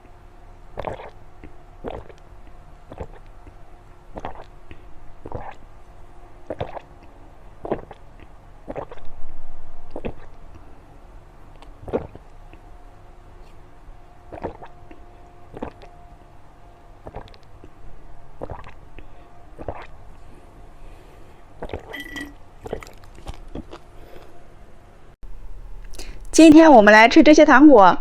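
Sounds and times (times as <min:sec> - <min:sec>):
wet chewing and sucking: 0:00.7 - 0:05.7, 0:06.4 - 0:09.1, 0:09.9 - 0:10.7, 0:11.5 - 0:12.7, 0:14.3 - 0:15.9, 0:17.0 - 0:17.8, 0:18.4 - 0:20.5, 0:21.6 - 0:24.3
mouth smacks: 0:00.8 - 0:03.6, 0:04.2 - 0:04.5, 0:05.2 - 0:05.6, 0:06.5 - 0:09.1, 0:11.5 - 0:12.6, 0:14.3 - 0:15.9, 0:17.0 - 0:17.8, 0:18.4 - 0:18.8, 0:19.6 - 0:19.9.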